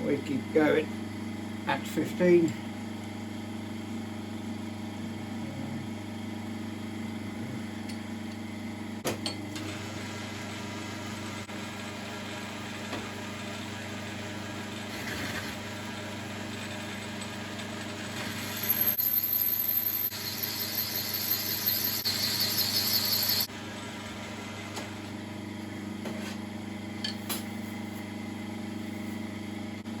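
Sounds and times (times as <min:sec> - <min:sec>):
lathe boring metal: 0:16.7 - 0:24.0.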